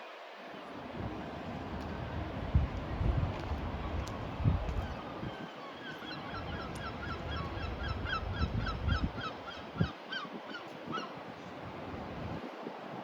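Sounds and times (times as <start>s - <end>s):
large bird calling: 4.9s - 11.2s.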